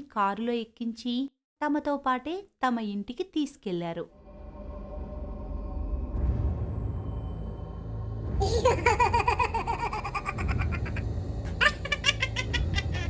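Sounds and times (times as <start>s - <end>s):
background music with low drone: 4.1s - 13.0s
high-pitched cartoon giggling: 8.4s - 13.0s.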